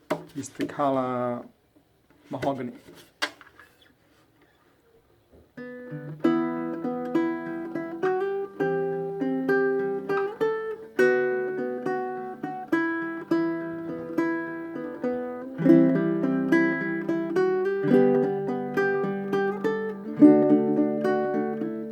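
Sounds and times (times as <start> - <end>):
ukulele picked melody: 5.6 - 21.9.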